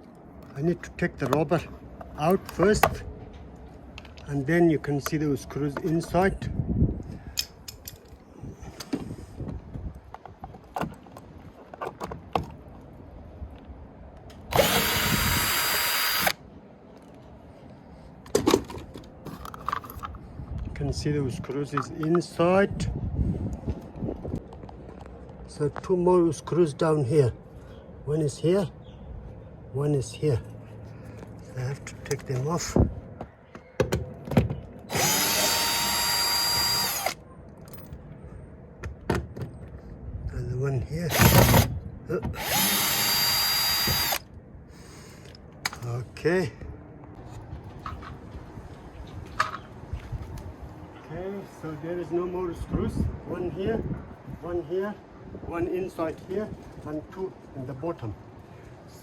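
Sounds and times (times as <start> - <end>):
cordless drill running: 14.5 - 16.4, 34.9 - 37.2, 41.1 - 41.7, 42.4 - 44.2.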